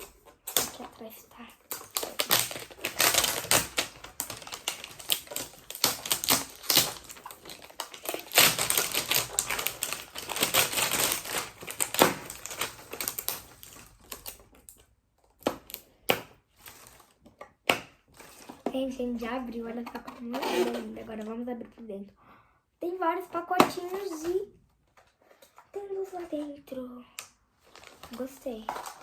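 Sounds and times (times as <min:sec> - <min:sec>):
plastic wrapping crinkling: 0:00.0 - 0:15.8, 0:27.6 - 0:29.0.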